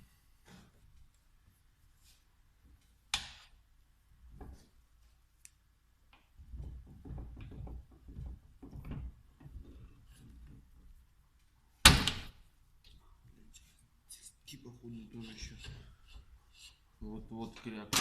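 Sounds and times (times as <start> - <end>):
soft knocking and rubbing: 4.2 - 5.1, 6.2 - 11.0, 15.1 - 17.4.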